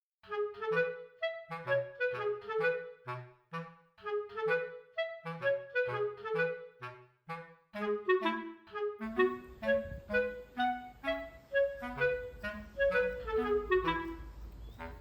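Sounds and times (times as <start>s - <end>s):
light melody of detached notes: 7.7s - 15.0s.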